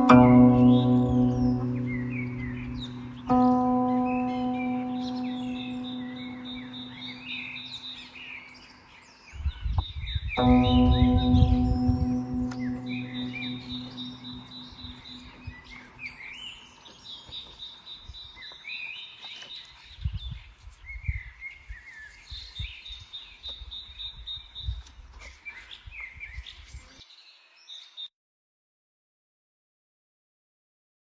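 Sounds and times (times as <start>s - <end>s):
low guqin note: 0.0s - 7.8s, 10.4s - 15.7s
wind rumbling on microphone: 9.3s - 12.8s, 19.9s - 21.7s.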